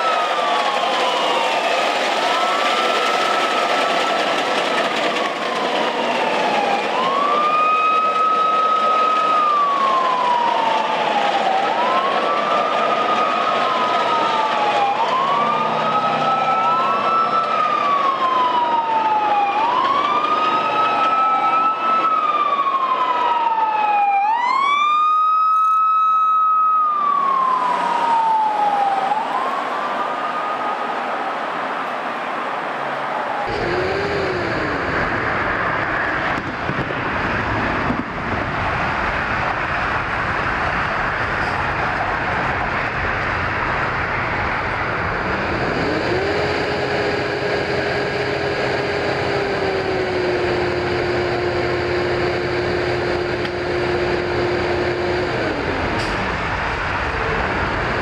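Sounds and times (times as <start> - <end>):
emergency vehicle siren wailing: 0.0 - 58.0
traffic noise: 0.0 - 58.0
vehicle noise rushing: 26.8 - 58.0.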